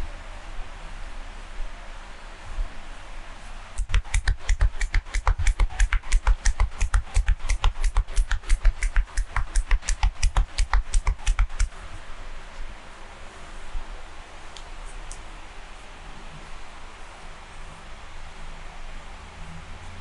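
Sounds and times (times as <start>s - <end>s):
hands striking body in massage: 3.8s - 11.7s.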